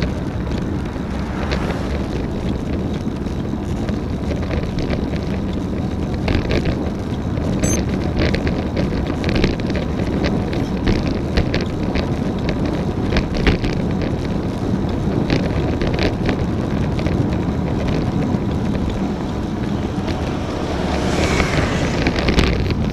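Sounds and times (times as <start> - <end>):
road noise: 0.0 - 22.9
wind on microphone: 14.0 - 22.9.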